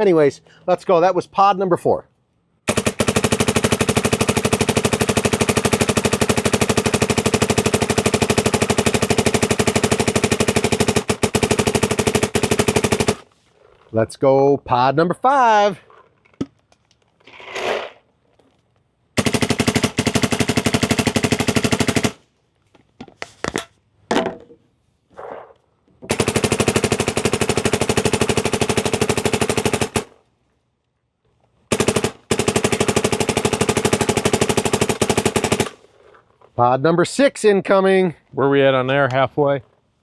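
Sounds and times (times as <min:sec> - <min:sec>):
paintball marker rapid-fire shots: 0:02.7 - 0:13.3, 0:19.2 - 0:22.2, 0:26.1 - 0:30.2, 0:31.7 - 0:35.8.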